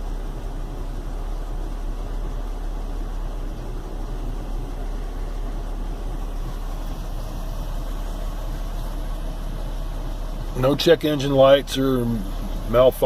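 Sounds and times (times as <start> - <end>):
car engine rough idle: 0.0 - 13.0.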